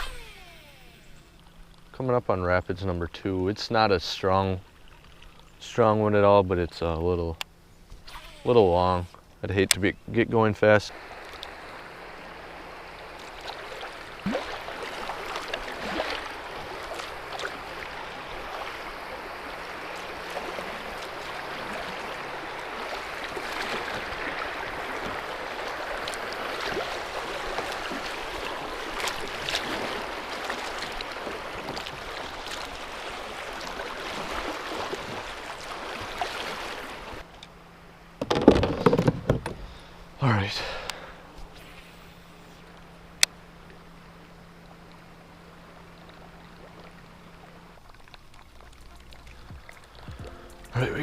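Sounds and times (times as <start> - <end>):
faint knocks and splashes: 22.8 - 36.8, 47.8 - 50.7.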